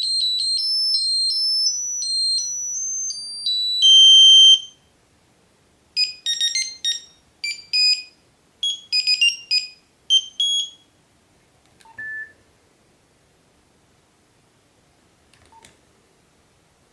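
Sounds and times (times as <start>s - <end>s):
phone key beep: 0.0s - 4.7s, 6.0s - 10.8s
phone beeping melody: 0.0s - 4.8s, 6.0s - 10.8s.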